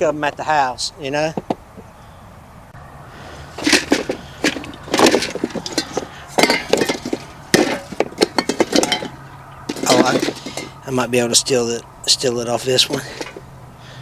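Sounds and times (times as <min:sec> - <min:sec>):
metal tools clinking and clattering: 0:03.6 - 0:10.9, 0:12.7 - 0:13.4.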